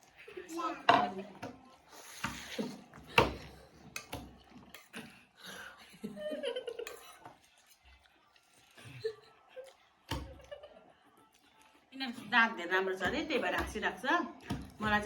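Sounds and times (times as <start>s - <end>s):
soft giggling: 4.8s - 7.4s, 8.6s - 11.2s.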